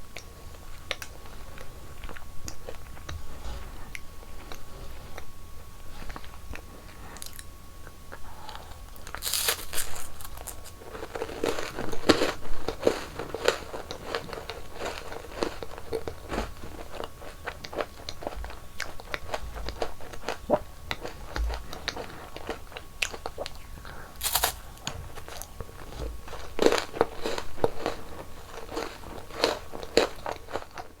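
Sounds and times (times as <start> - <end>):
crunching and chewing snacks: 6.0 - 31.0
loud crisp bites: 9.1 - 10.7, 24.2 - 24.6.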